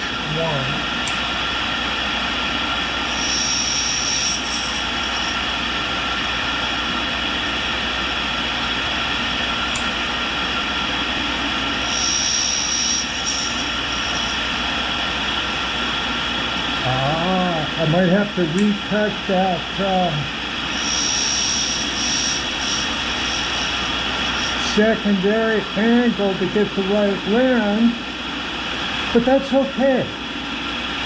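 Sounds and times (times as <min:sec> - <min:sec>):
grinder wheel running: 0:02.9 - 0:05.6, 0:11.7 - 0:16.0, 0:20.4 - 0:24.8
high-pitched grinding squeal: 0:02.9 - 0:05.8, 0:11.7 - 0:16.1, 0:20.5 - 0:25.3.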